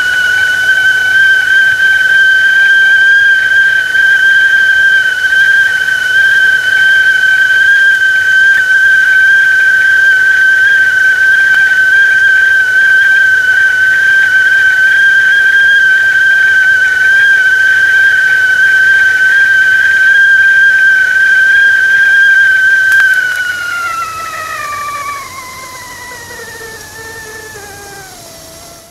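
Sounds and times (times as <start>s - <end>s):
kettle whistling: 0.0s - 28.9s.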